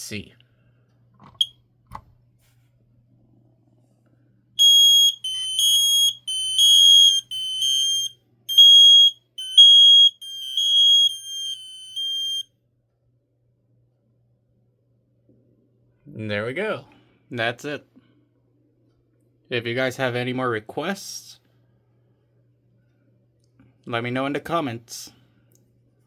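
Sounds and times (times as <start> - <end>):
loud high-pitched alarm beeps: 4.6 - 12.5
smoke alarm chirp: 4.6 - 12.5.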